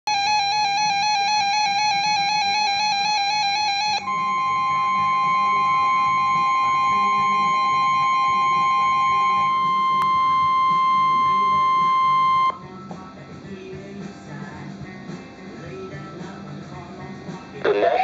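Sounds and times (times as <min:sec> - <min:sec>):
electronic tone warbling: 0:00.1 - 0:12.6
two-tone attention signal: 0:00.1 - 0:12.6.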